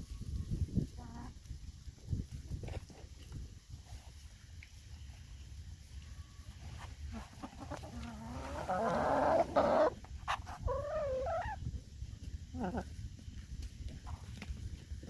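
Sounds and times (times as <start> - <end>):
chickens calling: 7.1 - 11.6.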